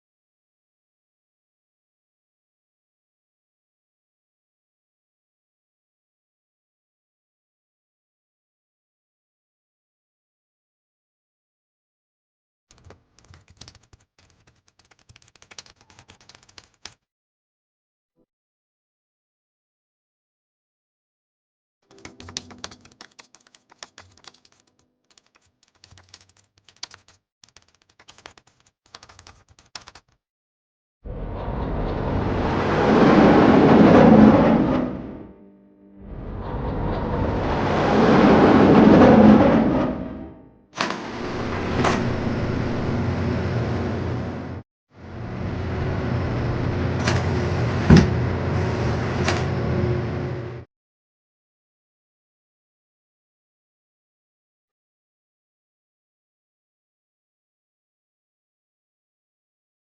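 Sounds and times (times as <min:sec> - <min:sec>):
steady rumbling noise: 0:31.1 - 0:35.4, 0:36.0 - 0:40.4, 0:41.0 - 0:50.6.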